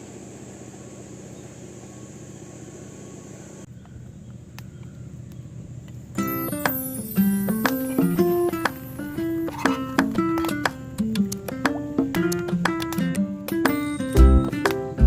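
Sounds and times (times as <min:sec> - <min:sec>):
low outdoor rumble: 0:00.0 - 0:06.2
high insect trill: 0:05.4 - 0:10.5
plucked guitar music: 0:06.2 - 0:15.0.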